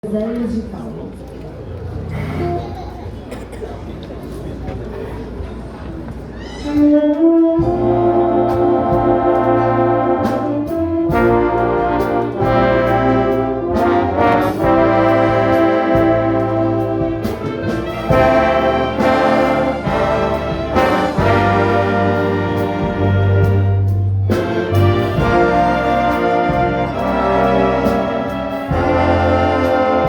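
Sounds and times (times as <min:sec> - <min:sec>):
brass chords: 0:06.6 - 0:30.0
low bass line: 0:07.5 - 0:30.0.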